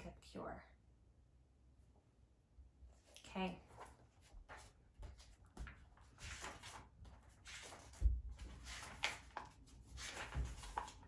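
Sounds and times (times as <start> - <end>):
book pages turning: 5.6 - 11.0.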